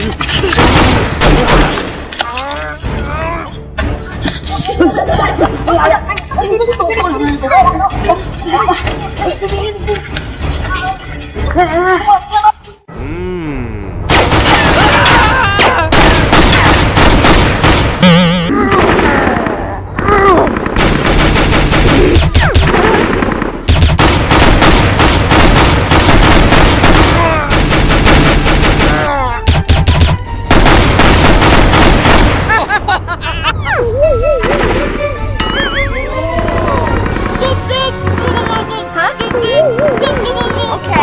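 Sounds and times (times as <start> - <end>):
automatic gunfire: 15.9 - 18.0, 20.6 - 29.1, 29.7 - 32.5.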